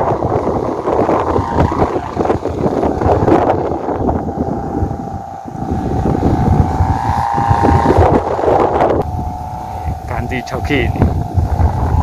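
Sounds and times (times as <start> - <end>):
kite humming tone: 0.0 - 12.0
wind buffeting microphone: 0.0 - 12.0.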